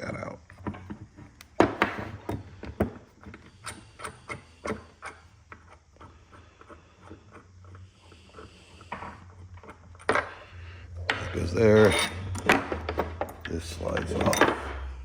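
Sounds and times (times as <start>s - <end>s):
small metal parts clinking: 11.0s - 14.8s.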